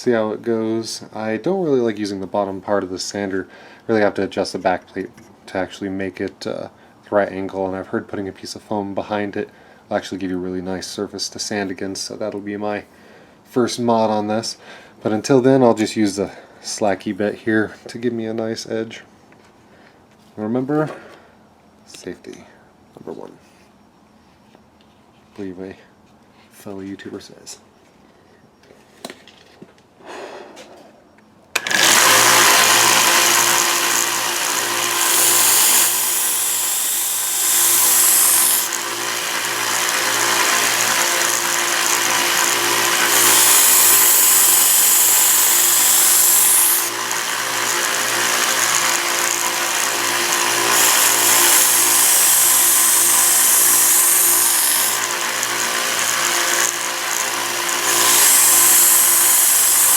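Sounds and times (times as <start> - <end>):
belt sander running: 31.6 - 59.9
knife blade grinding on belt: 42.4 - 47.0, 50.5 - 55.1.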